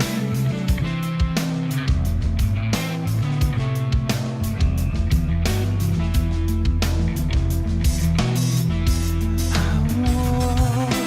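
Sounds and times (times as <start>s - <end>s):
rock music with guitar and drums: 0.0s - 11.0s.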